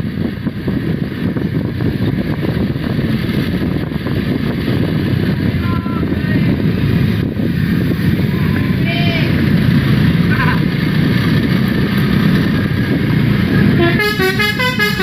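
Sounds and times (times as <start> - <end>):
wind on microphone: 0.0 - 13.8
bus engine and road noise: 0.0 - 15.0.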